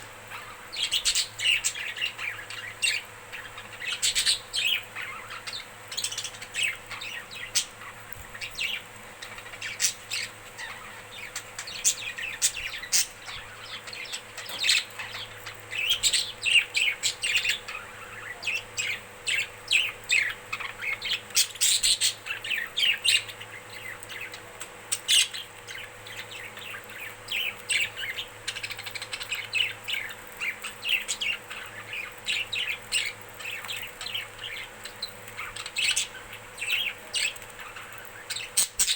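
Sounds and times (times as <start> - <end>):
faint steady hum: 0.0 - 38.9
budgerigars chattering: 0.3 - 38.9.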